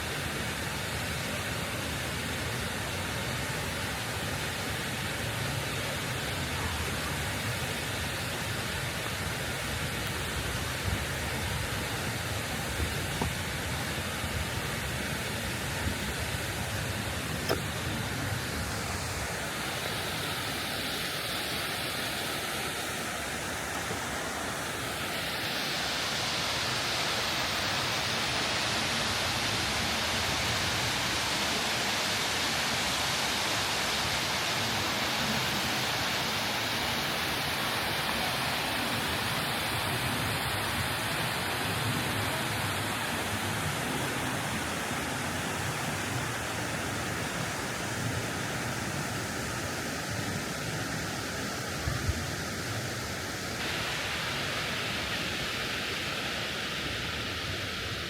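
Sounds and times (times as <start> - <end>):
running water rushing: 0.0 - 58.0.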